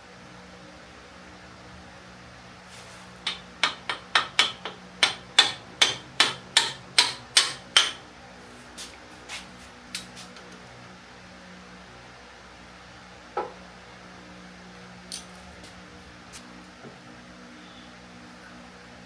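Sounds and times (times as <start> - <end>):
hammer striking steel: 3.2 - 8.1.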